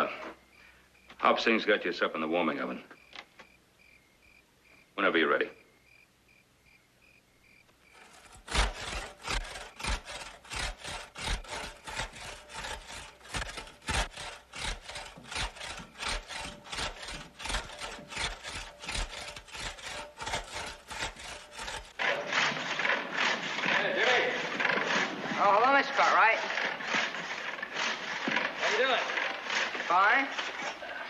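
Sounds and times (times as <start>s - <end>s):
hand saw cutting wood: 7.9s - 31.0s.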